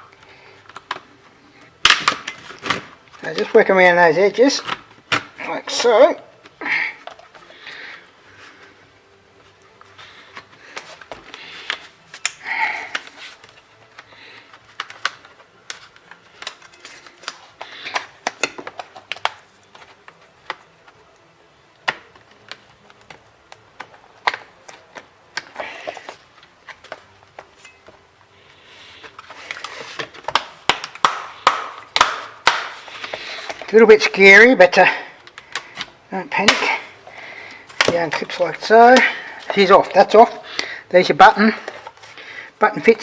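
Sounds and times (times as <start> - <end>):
plastic clips snapping loose: 0.1 - 1.1, 1.8 - 3.6, 10.4 - 20.7, 21.8 - 27.5, 29.1 - 33.8, 37.5 - 40.7.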